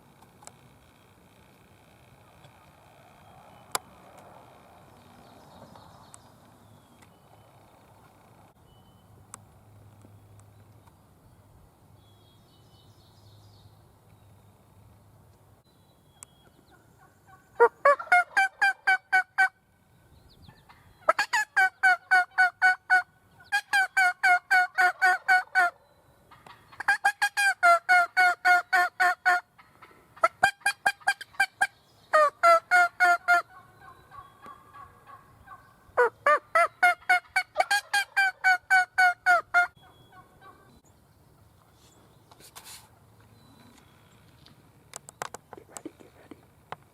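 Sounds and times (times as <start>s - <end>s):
turkey calling: 16.2s - 19.6s, 20.7s - 42.0s.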